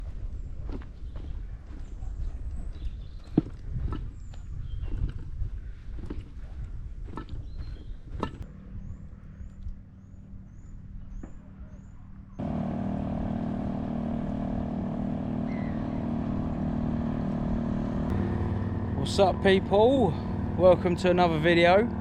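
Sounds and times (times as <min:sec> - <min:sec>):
low rumble: 0:12.4 - 0:22.0
motor running steadily: 0:12.4 - 0:22.0.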